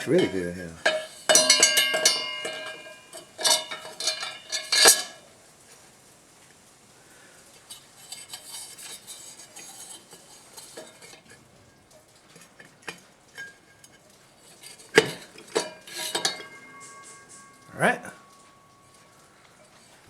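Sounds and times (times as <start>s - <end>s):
metal parts clinking and rattling: 0.0s - 5.3s, 7.7s - 11.5s, 12.1s - 20.0s
sharp metal clank: 0.0s - 5.3s, 14.6s - 19.2s.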